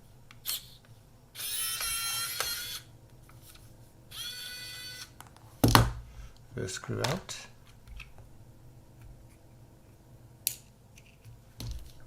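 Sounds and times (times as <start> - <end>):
electric screwdriver whirring: 1.4 - 2.9, 4.1 - 5.2.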